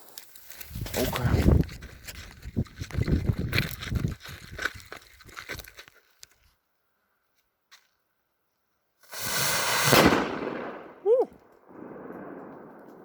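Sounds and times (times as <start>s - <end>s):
firecracker blast: 9.1s - 13.0s.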